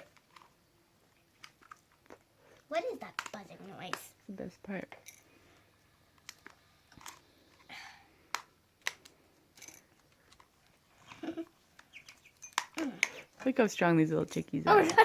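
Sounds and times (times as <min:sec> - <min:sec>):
plastic clicks and crackles: 0:00.0 - 0:00.6, 0:01.2 - 0:04.1, 0:06.1 - 0:07.7, 0:08.3 - 0:13.3.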